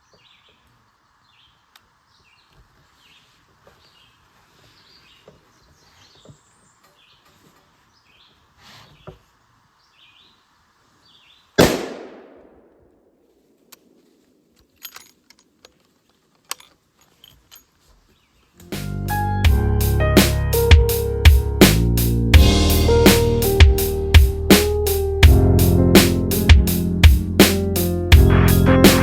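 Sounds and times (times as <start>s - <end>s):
birds chirping faintly: 0.0s - 11.6s, 13.4s - 18.8s
rifle shot with echo: 11.6s - 13.0s.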